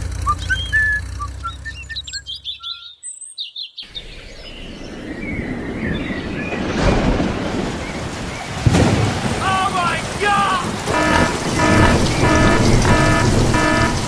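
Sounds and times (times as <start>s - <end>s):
birds chirping and whistling: 0.0s - 6.9s, 10.9s - 14.0s
rushing noise: 4.1s - 14.0s.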